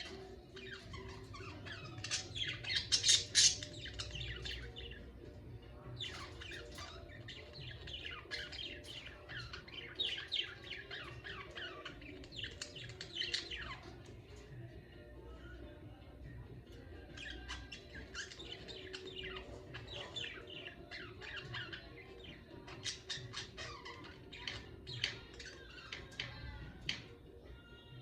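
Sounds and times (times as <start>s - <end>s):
budgerigars chirping: 0.0s - 14.1s, 17.1s - 27.1s.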